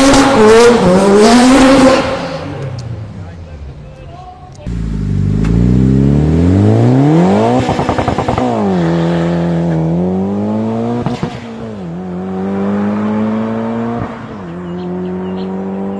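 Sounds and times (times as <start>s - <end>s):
sports car engine revving: 4.7s - 15.9s.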